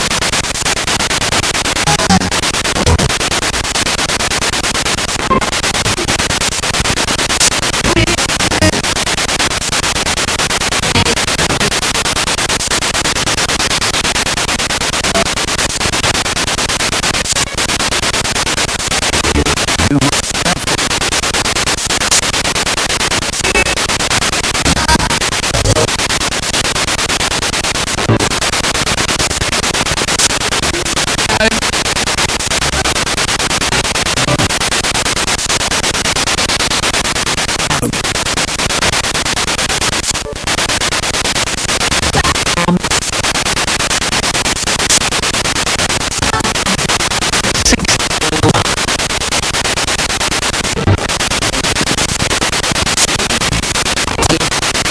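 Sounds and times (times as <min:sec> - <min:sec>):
radio static: 0:00.0 - 0:54.9
scraps of broadcast voices: 0:01.6 - 0:03.7, 0:04.5 - 0:13.6, 0:14.2 - 0:54.9
broadcast tones: 0:01.8 - 0:03.2, 0:07.8 - 0:08.9, 0:10.8 - 0:11.7, 0:23.4 - 0:23.9, 0:24.6 - 0:25.9, 0:40.0 - 0:40.6, 0:41.9 - 0:43.2.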